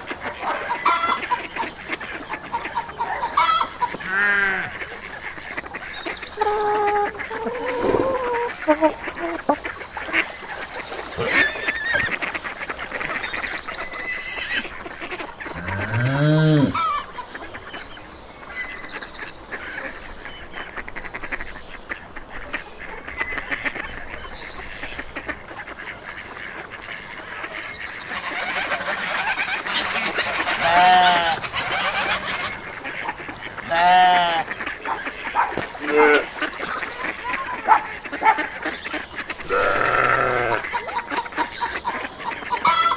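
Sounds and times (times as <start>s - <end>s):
farmyard animals calling: 0.0s - 42.9s
low rising and falling animal call: 6.4s - 9.4s, 15.6s - 17.0s
loud high-pitched animal call: 39.4s - 40.6s.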